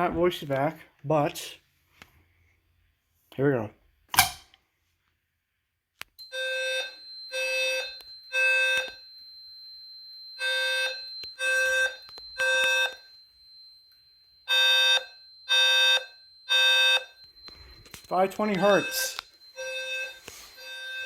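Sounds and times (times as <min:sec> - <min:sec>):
fire alarm sounder blaring: 0:06.2 - 0:21.0.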